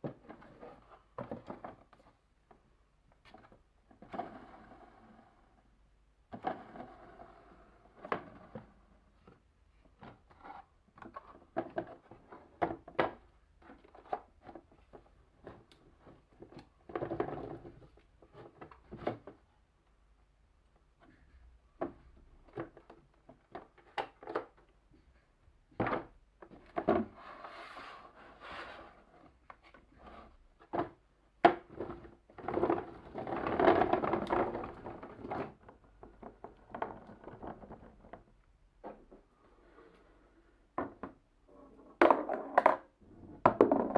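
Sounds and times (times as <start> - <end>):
balls rolling rumble: 41.8 - 43.9
wooden balls knocking on track: 42.0 - 43.9.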